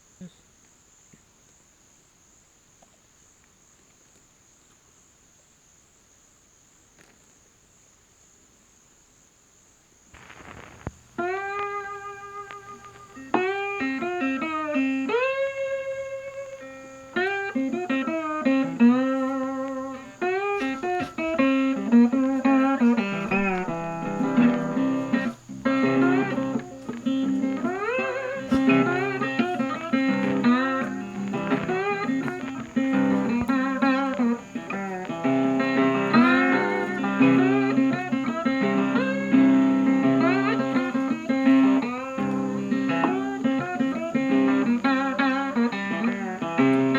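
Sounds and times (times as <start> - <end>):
blues slide guitar: 10.2 - 46.9.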